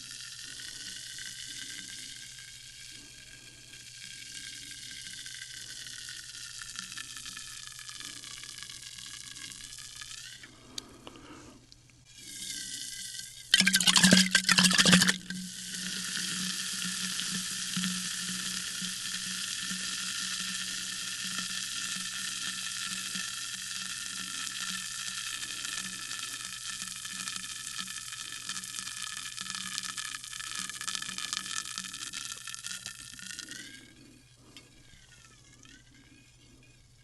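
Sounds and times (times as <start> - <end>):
sparkling water fizzing: 13.3 - 33.0
rush of fizzing water: 13.6 - 15.2.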